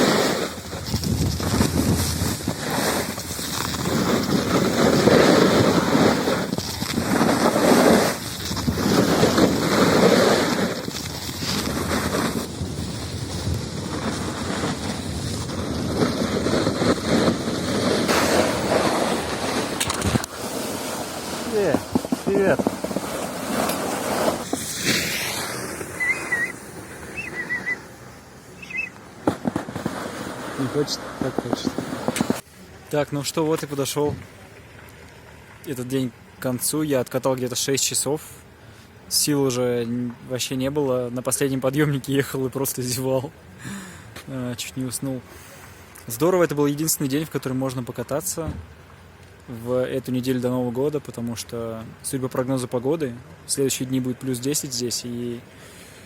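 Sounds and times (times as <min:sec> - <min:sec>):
wind buffeting microphone: 0:00.0 - 0:20.4
skis carving on snow: 0:00.0 - 0:32.4
small bird chirping: 0:25.9 - 0:27.9, 0:28.5 - 0:29.0.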